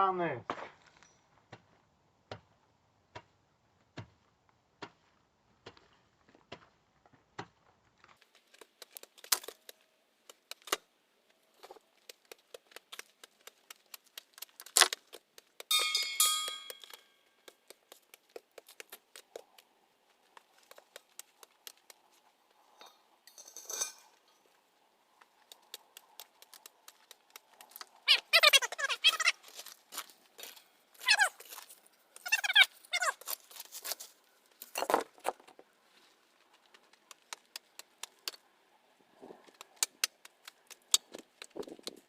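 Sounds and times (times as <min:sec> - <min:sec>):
brief ringing clink: 0:15.7 - 0:17.2.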